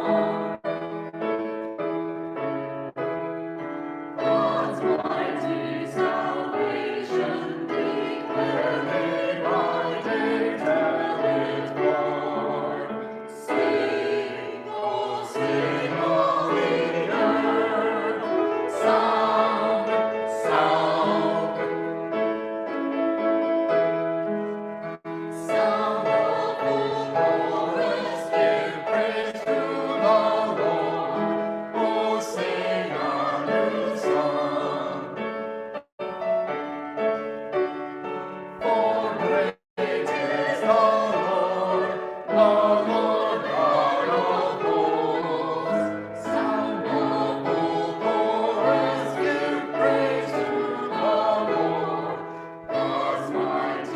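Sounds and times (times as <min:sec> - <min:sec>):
choir singing sustained chords: 0:00.0 - 0:00.7, 0:04.2 - 0:22.0, 0:25.0 - 0:35.3, 0:38.6 - 0:53.9.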